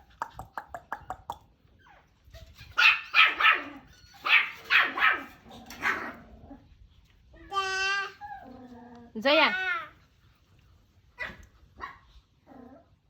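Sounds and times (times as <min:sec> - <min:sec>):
dog barking and yipping: 0:02.5 - 0:06.3, 0:11.2 - 0:12.1.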